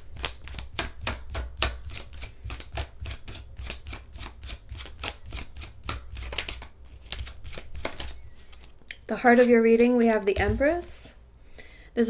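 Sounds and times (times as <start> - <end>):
cards being shuffled: 0.1 - 10.9.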